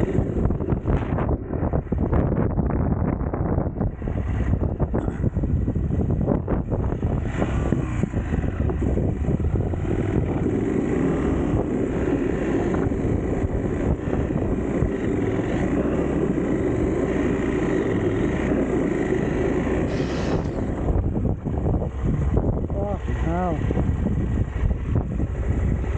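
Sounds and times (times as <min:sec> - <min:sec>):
motorcycle engine running: 0:00.0 - 0:25.9
wind rushing over microphone: 0:00.0 - 0:25.9.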